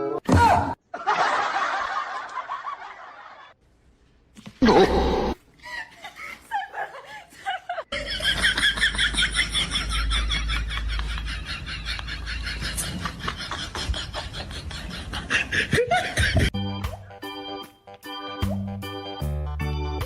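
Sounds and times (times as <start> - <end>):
high-pitched laughter: 4.6 - 16.6.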